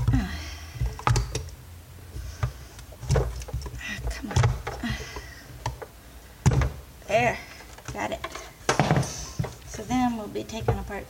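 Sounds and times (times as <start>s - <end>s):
sharp plastic clicks and knocks: 0.0s - 1.6s, 2.4s - 6.8s.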